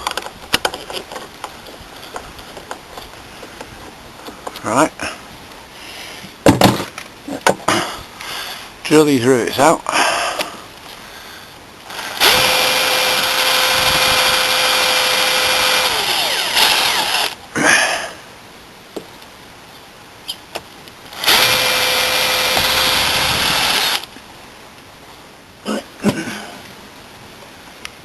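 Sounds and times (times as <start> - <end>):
power drill drilling rivets: 11.9 - 17.4, 21.1 - 24.1.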